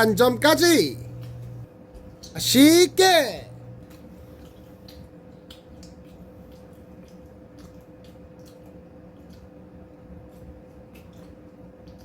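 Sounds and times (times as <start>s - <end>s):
faint steady hum: 0.0s - 12.0s
wet mouth chewing clicks: 3.8s - 12.0s.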